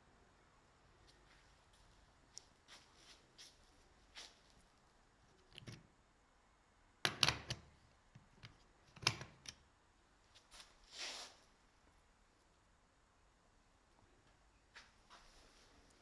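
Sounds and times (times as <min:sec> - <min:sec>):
sharp clicks and knocks: 0:07.1 - 0:09.6.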